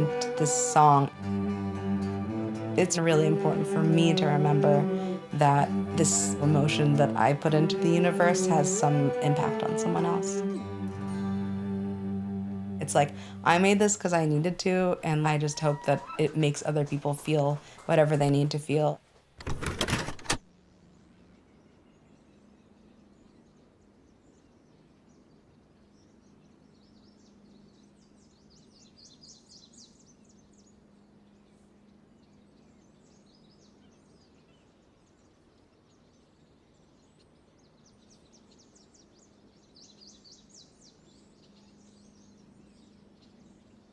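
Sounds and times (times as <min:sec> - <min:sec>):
steady low hum: 0:00.0 - 0:16.6.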